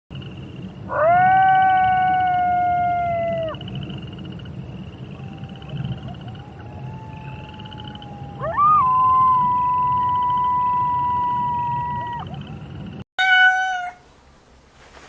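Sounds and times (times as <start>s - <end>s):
wolf howling: 0.9s - 3.6s, 5.0s - 12.7s.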